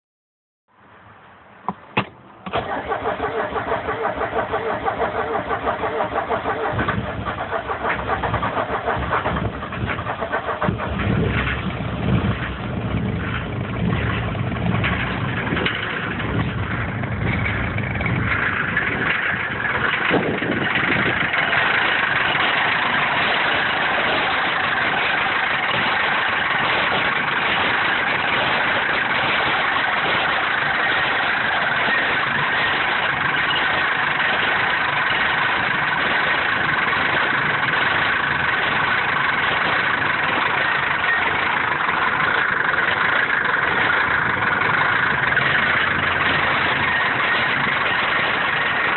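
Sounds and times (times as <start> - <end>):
diesel engine idling roughly: 2.5 - 48.9.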